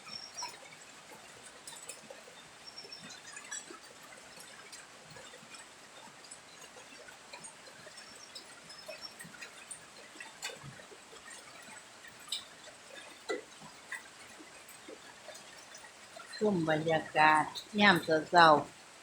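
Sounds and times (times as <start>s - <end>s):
rain falling: 0.0s - 19.0s
water dripping: 0.0s - 19.0s.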